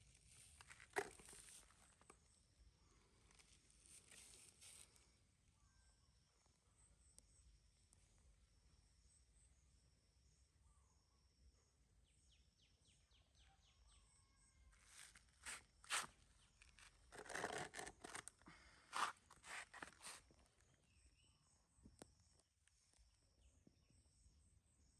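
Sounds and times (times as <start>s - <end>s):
rustling and scraping: 0.0s - 2.2s, 3.2s - 5.1s, 14.8s - 20.4s
insects chirping: 13.9s - 24.9s.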